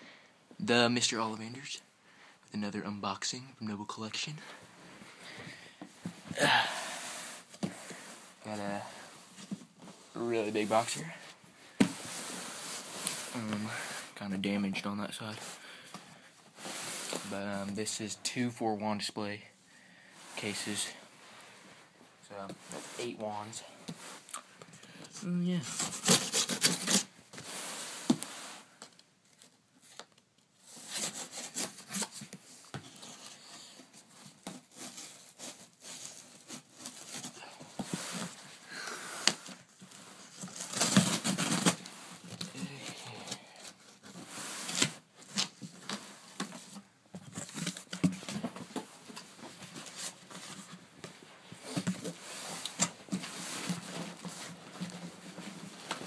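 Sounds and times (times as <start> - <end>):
tape and paper tearing: 25.5 - 27.1.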